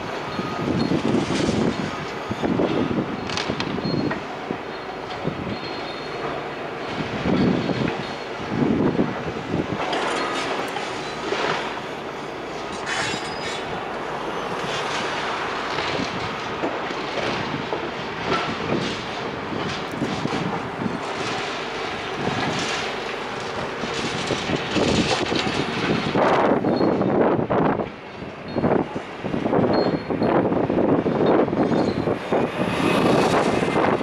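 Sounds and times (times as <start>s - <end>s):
heavy machinery breaking building: 0.0s - 27.1s
rubble and metal clattering: 0.2s - 27.0s.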